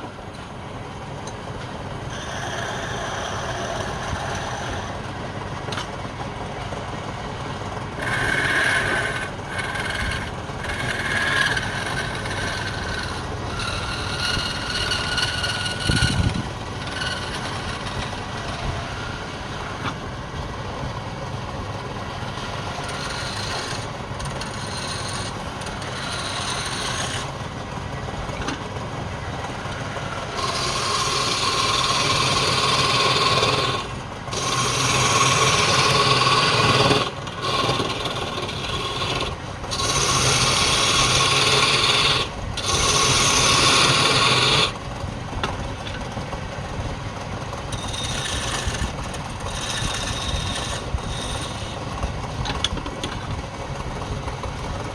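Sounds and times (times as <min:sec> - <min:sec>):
wood lathe motor hum: 0:00.0 - 0:28.4, 0:29.4 - 0:54.9
turning tool scraping wood: 0:01.2 - 0:06.2, 0:07.6 - 0:20.0, 0:22.0 - 0:27.5, 0:29.4 - 0:46.4, 0:47.2 - 0:54.9.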